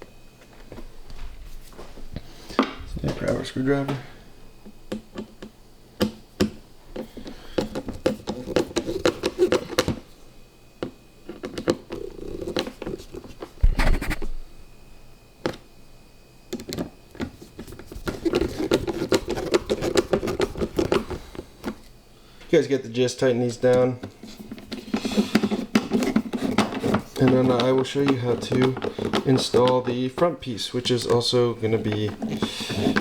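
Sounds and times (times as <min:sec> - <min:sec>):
screwdriver scraping and clicking: 0:16.5 - 0:21.8, 0:23.7 - 0:30.0, 0:30.9 - 0:33.0.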